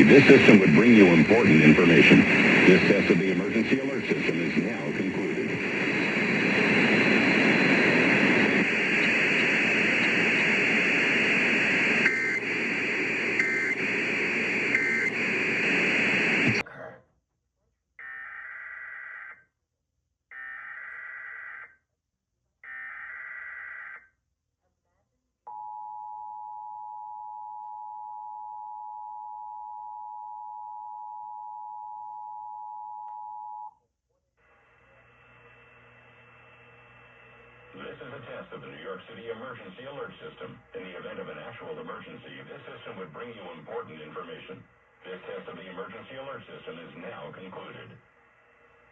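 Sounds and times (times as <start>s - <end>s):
hissing radio static: 0.0s - 16.6s, 34.5s - 48.9s
two-tone data bursts: 5.0s - 16.4s.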